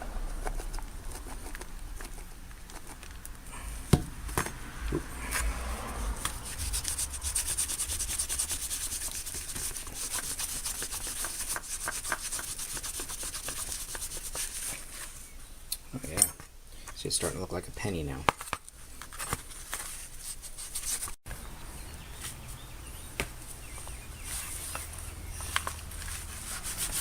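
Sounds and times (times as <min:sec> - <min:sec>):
wet rag scrubbing: 0:00.0 - 0:14.9, 0:24.2 - 0:27.0
sharp knock: 0:03.7 - 0:07.7.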